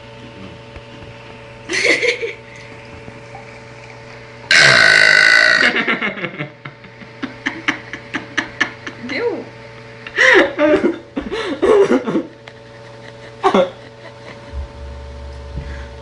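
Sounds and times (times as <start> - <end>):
person burping: 4.5 - 5.9.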